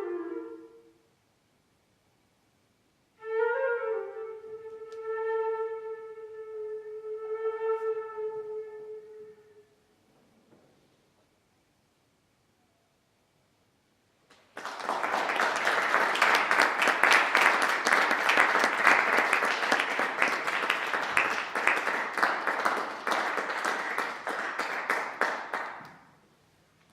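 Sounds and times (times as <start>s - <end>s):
audience applauding: 14.3s - 26.1s.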